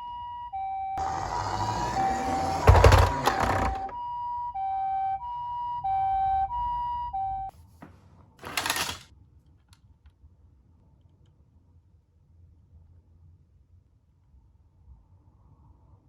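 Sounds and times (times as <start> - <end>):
two-tone ambulance siren: 0.0 - 7.5.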